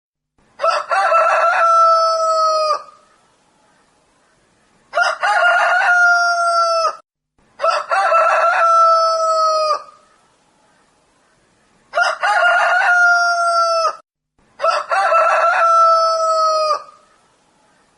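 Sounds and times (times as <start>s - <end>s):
rooster crowing: 0.6s - 3.0s, 4.9s - 7.0s, 7.6s - 10.0s, 11.9s - 14.0s, 14.6s - 17.0s.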